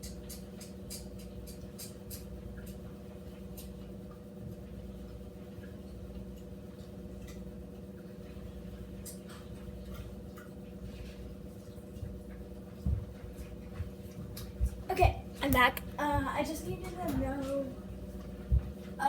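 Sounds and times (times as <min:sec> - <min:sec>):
faint clicks and ticks: 0:00.0 - 0:08.1
low appliance hum: 0:00.0 - 0:19.0.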